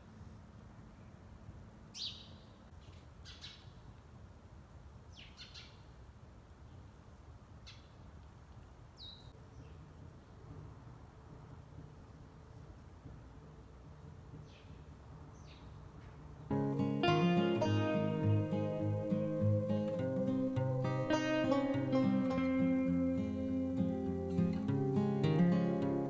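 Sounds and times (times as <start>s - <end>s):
faint bird chirps: 1.9s - 3.9s, 5.1s - 6.0s, 9.0s - 9.9s.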